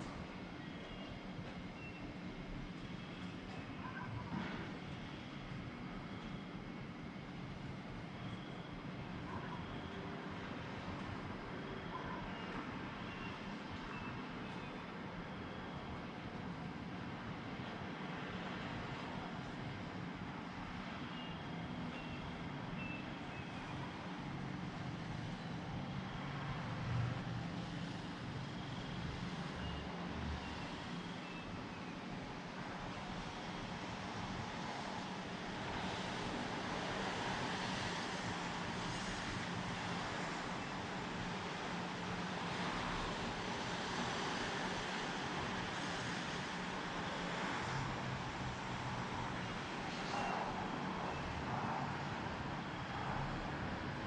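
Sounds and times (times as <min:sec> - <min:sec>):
steady rain: 0:32.3 - 0:51.9.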